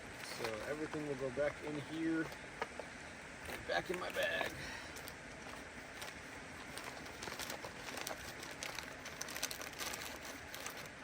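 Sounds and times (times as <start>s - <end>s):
plastic wrappers crinkling: 3.5s - 11.0s.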